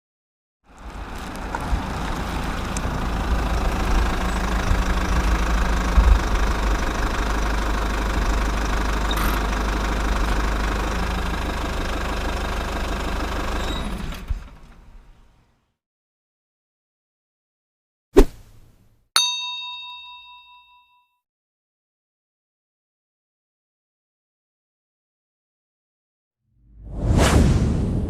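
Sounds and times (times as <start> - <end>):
bus engine running: 0.7 - 15.6.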